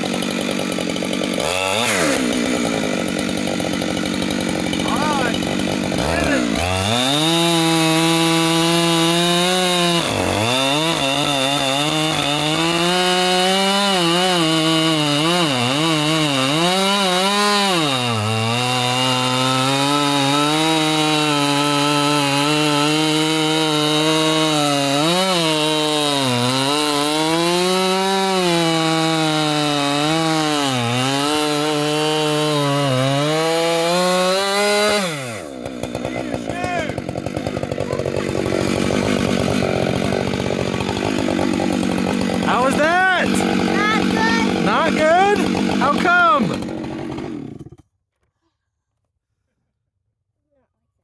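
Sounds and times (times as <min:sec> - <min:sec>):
chainsaw cutting wood: 0:00.0 - 0:48.0.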